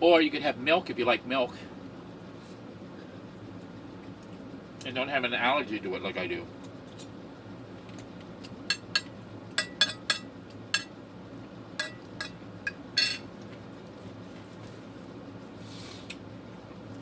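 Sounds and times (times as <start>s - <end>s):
room hum: 0.0s - 17.0s
cutlery clinking against a dish: 8.7s - 11.0s, 11.8s - 13.3s.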